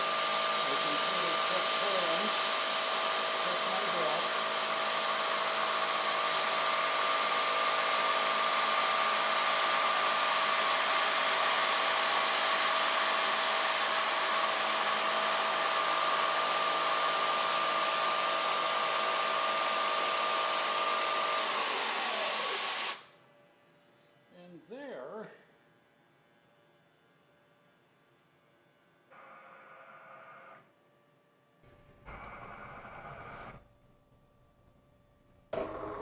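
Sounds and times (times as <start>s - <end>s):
milling machine spindle running: 0.0s - 23.0s, 35.6s - 36.0s.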